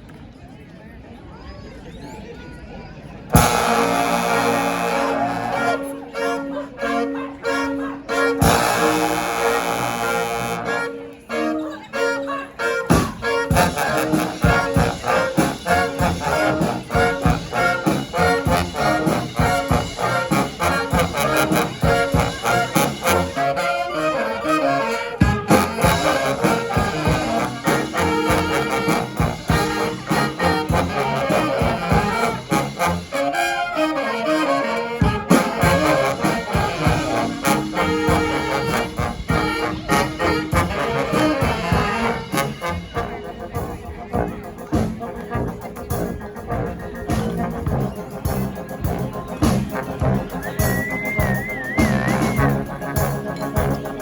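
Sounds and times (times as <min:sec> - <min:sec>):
brass band playing: 0:03.3 - 0:54.0
heavy drum beat: 0:12.9 - 0:23.3, 0:25.2 - 0:33.0, 0:35.0 - 0:54.0.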